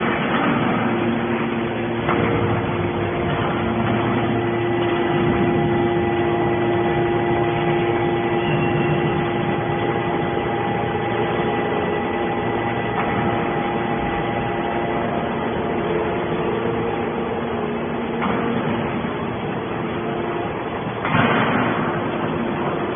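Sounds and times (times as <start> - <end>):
hydraulic machine humming: 0.0 - 22.9.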